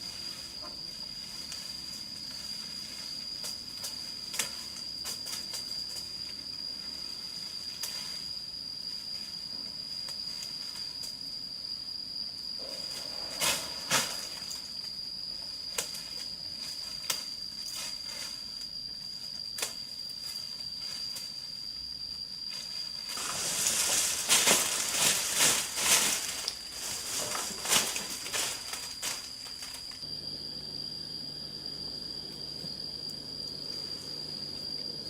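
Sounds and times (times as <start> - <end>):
insects droning: 0.0 - 35.0
rustles and light knocks: 22.6 - 30.0.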